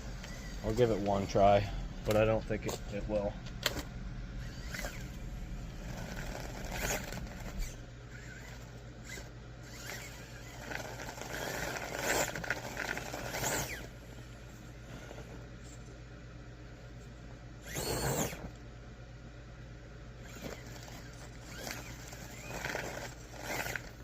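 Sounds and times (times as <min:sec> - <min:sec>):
rc car electric motor whining: 0:00.0 - 0:01.2, 0:04.4 - 0:14.0, 0:17.6 - 0:18.6, 0:20.2 - 0:24.0
steady low hum: 0:00.0 - 0:24.0.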